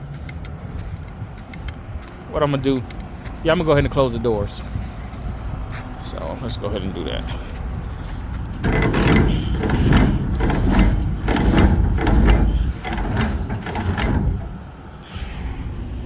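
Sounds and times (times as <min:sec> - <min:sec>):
hopper gate mechanism clanking: 0:08.3 - 0:15.7.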